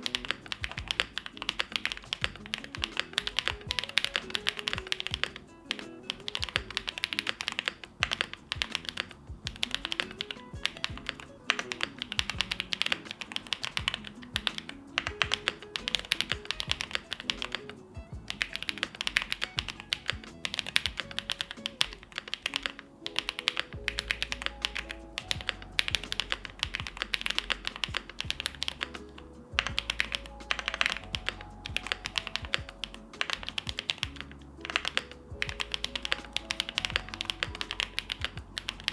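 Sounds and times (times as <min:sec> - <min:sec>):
background music: 0:00.0 - 0:38.9
mechanical keyboard typing: 0:00.0 - 0:38.9
deep bass: 0:00.6 - 0:01.2, 0:08.0 - 0:09.9, 0:18.0 - 0:18.4, 0:36.8 - 0:38.9.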